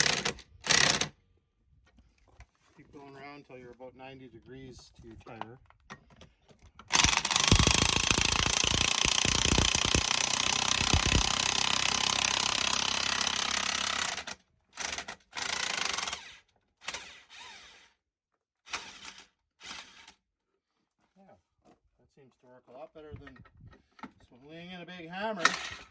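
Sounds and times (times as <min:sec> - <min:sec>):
bead breaker hammering: 0:06.9 - 0:14.1.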